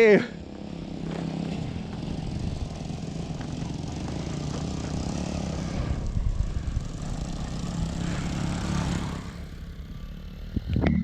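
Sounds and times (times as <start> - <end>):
motorbike engine running: 0.0 - 11.0
wind buffeting microphone: 2.0 - 4.4, 5.2 - 8.4.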